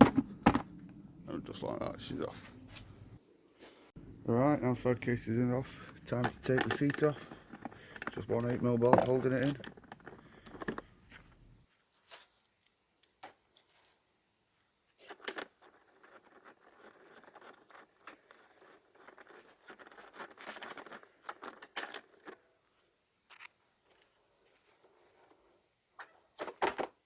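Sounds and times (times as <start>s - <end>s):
hand tools clicking and knocking: 5.6s - 10.9s.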